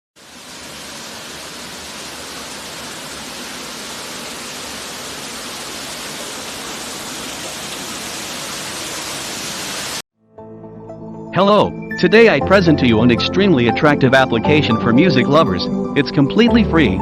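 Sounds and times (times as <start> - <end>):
floodwater rushing: 0.2 - 10.0.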